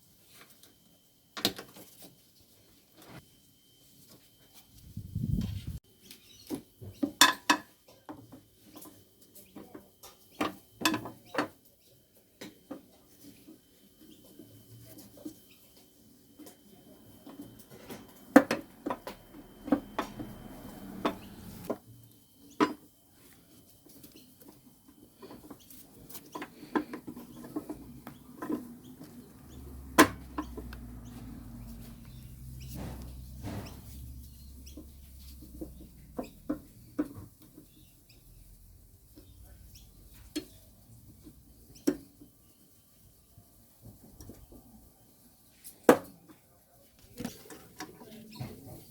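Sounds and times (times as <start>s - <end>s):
mower parts clicking and knocking: 18.3s - 21.8s.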